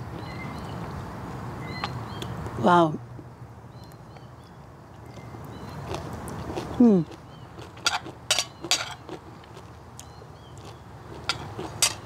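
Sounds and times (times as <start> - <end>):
person eating: 5.8 - 12.0
utensil clinking against dish: 11.3 - 12.0.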